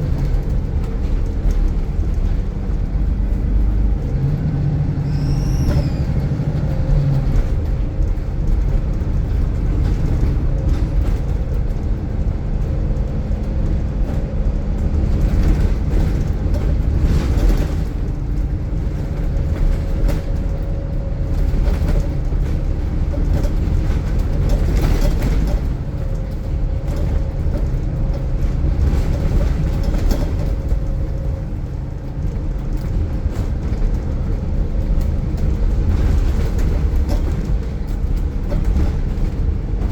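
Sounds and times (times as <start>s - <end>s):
diesel bus engine rumbling: 0.0s - 39.9s
turbo whistle: 5.0s - 6.4s.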